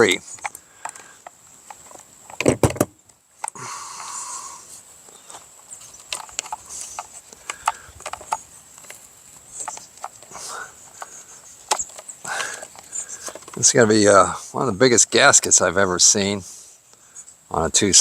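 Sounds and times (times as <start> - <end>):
plastic and metal parts clicking: 0.0 - 3.6, 5.3 - 13.8.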